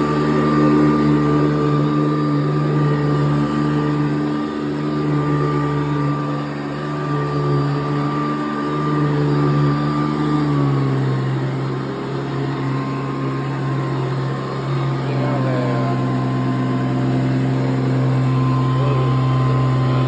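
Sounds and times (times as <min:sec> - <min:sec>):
vacuum cleaner running: 0:00.0 - 0:20.0.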